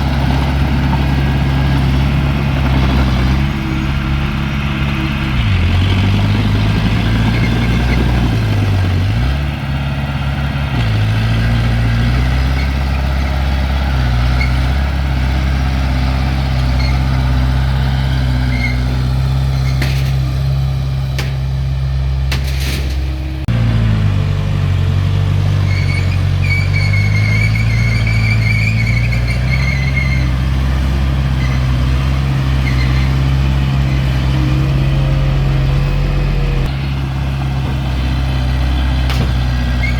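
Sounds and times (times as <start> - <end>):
diesel engine of heavy machinery: 0.0 - 39.9
high squeal: 2.9 - 8.2, 18.4 - 19.8, 25.6 - 30.4, 39.7 - 39.9.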